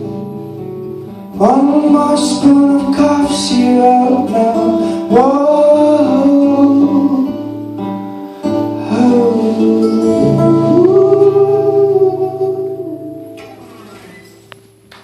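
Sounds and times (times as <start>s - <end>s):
person singing long held notes: 1.4s - 7.5s, 8.7s - 13.4s.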